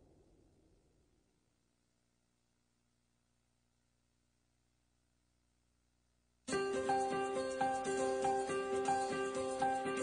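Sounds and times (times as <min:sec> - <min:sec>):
instrumental background music: 0:06.5 - 0:10.0.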